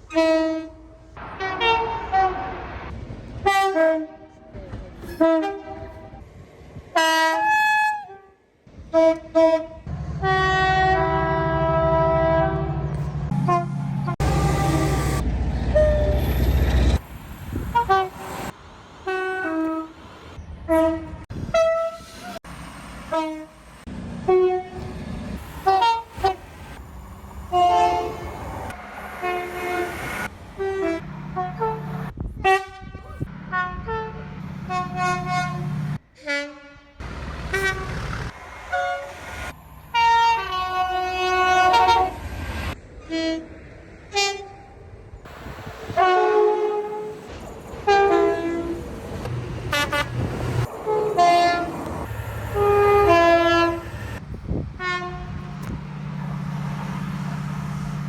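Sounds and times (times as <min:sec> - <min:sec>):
train horn blasts: 0:00.1 - 0:02.6, 0:03.4 - 0:04.5, 0:05.1 - 0:06.2, 0:06.9 - 0:16.4, 0:17.5 - 0:18.4, 0:19.0 - 0:20.0, 0:20.6 - 0:22.4, 0:23.1 - 0:23.6, 0:24.2 - 0:26.8, 0:27.5 - 0:42.3, 0:43.0 - 0:44.8, 0:45.9 - 0:54.2, 0:54.8 - 0:55.8
two-tone train horn calls: 0:00.1 - 0:02.6, 0:07.0 - 0:16.3, 0:19.1 - 0:20.0, 0:20.7 - 0:22.4, 0:23.1 - 0:23.6, 0:24.2 - 0:26.5, 0:27.5 - 0:38.0, 0:39.9 - 0:42.2, 0:43.0 - 0:43.5, 0:44.1 - 0:44.7, 0:45.9 - 0:54.2, 0:54.8 - 0:55.7
train running noise: 0:08.7 - 0:36.0, 0:36.9 - 0:58.0.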